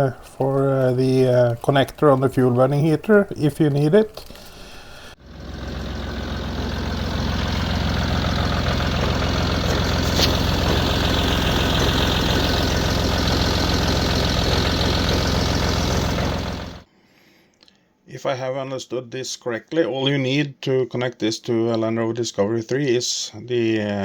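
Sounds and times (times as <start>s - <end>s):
vehicle engine running: 5.1s - 16.9s.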